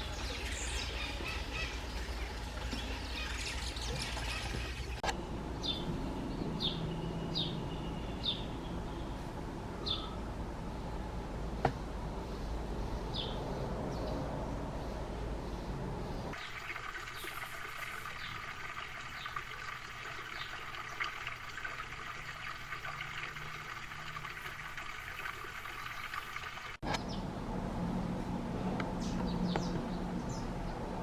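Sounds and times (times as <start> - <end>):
small birds chirping: 16.3 - 26.8.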